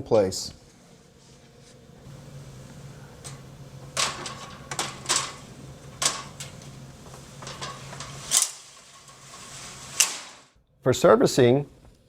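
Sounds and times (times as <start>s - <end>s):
low steady hum: 0.0s - 12.0s
sheet metal rails clicking: 3.2s - 10.5s.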